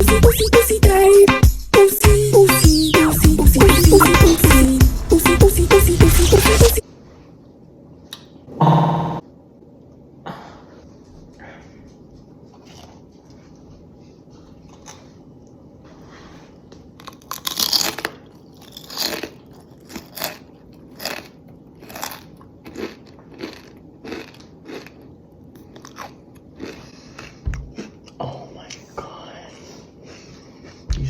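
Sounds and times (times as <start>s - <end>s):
crunchy snack being chewed: 12.6s - 13.0s, 14.7s - 15.1s, 16.8s - 28.2s.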